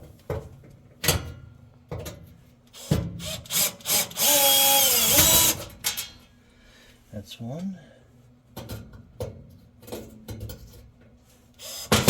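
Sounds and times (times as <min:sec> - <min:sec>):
drill-driver whirring: 0:03.2 - 0:05.6, 0:11.6 - 0:12.0.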